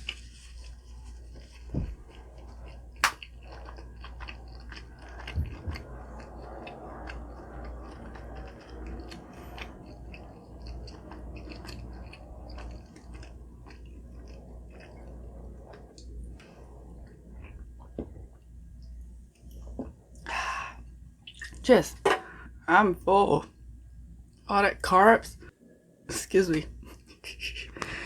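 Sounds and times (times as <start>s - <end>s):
chewing and eating: 0.0s - 20.3s.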